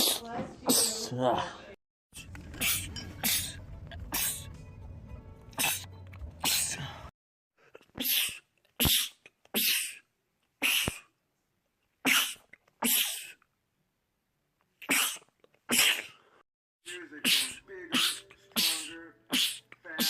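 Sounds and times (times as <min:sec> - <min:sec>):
man sneezing: 0:02.6 - 0:04.4, 0:05.6 - 0:07.0, 0:08.0 - 0:11.1, 0:12.0 - 0:13.4, 0:14.8 - 0:16.3, 0:16.9 - 0:20.0.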